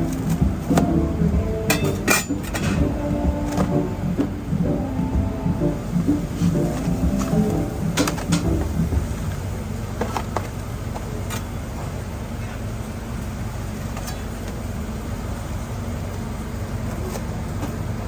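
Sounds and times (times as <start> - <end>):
kitchen equipment humming: 0.0 - 18.0
utensils clicking and clinking: 1.7 - 2.9, 6.3 - 9.4.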